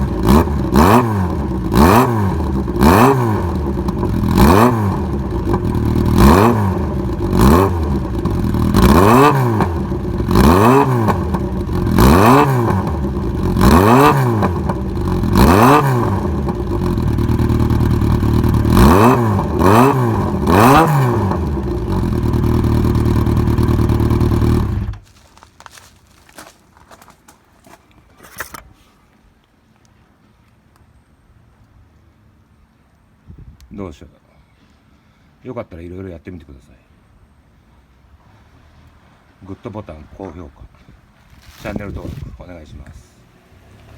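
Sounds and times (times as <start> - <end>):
motorcycle engine revving: 0.0 - 25.2, 43.2 - 43.9
motorcycle engine idling: 0.0 - 27.1.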